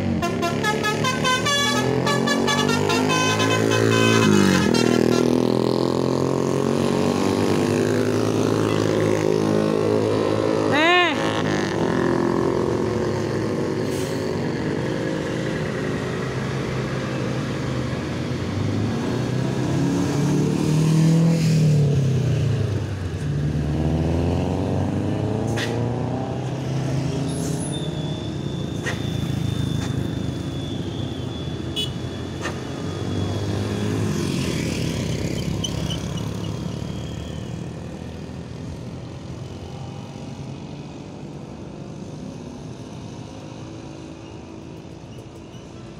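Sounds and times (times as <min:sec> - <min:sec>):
heavy vehicles passing: 0:00.0 - 0:45.9.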